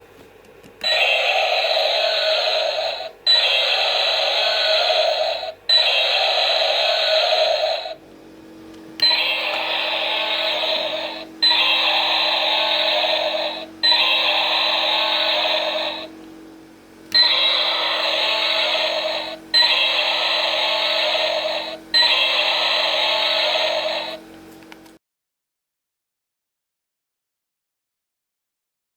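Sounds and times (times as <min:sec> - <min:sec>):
steady low hum: 0:00.0 - 0:25.0
toy dinosaur electronic roar: 0:00.8 - 0:08.0, 0:09.0 - 0:16.1, 0:17.1 - 0:24.3.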